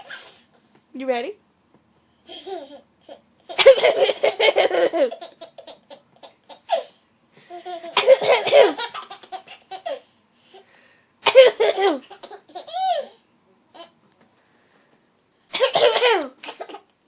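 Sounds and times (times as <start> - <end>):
baby belly-laughing: 2.3 - 10.1, 11.3 - 13.2.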